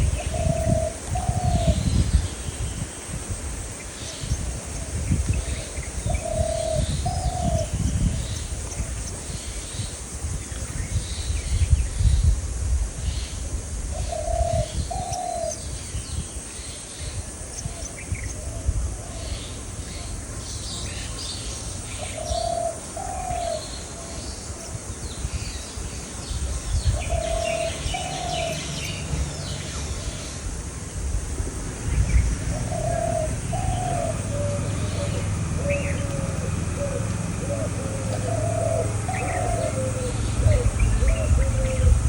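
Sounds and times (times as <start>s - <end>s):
dove cooing: 0.0s - 2.2s, 4.6s - 9.0s, 14.0s - 15.6s, 22.0s - 24.2s, 26.9s - 29.0s, 32.4s - 42.0s
small birds chirping: 0.0s - 12.3s, 19.1s - 30.5s, 31.9s - 42.0s.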